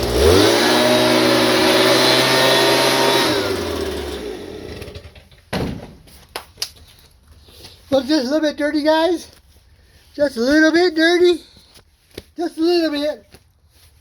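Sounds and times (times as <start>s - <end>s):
small petrol engine running: 0.0s - 5.4s
thump: 5.5s - 6.2s.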